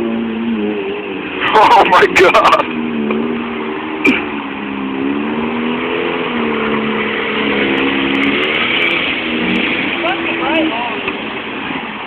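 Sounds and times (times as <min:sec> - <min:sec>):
car engine revving: 0:00.0 - 0:12.0
steady rushing noise: 0:01.4 - 0:04.2.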